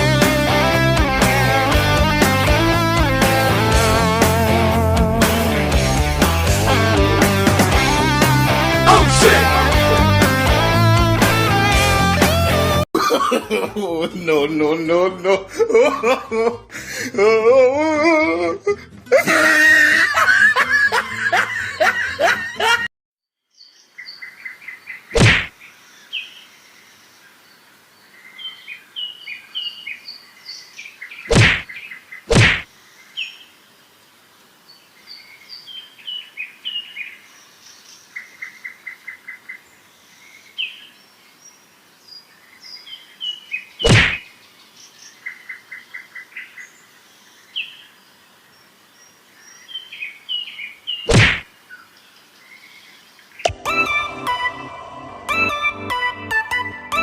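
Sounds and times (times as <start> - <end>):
wavering voice-like sound: 8.8 - 10.1, 53.5 - 56.3
birds chirping and trilling: 23.5 - 33.7, 34.6 - 57.0
sharp knocks: 25.2 - 25.5, 31.3 - 31.6, 32.3 - 32.7, 43.9 - 44.2, 51.1 - 51.4.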